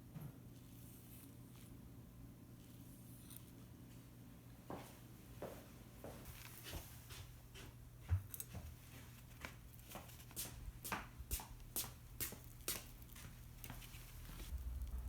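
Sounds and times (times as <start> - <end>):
charcoal fire crackling: 11.5 - 15.0
low steady hum: 11.6 - 15.0.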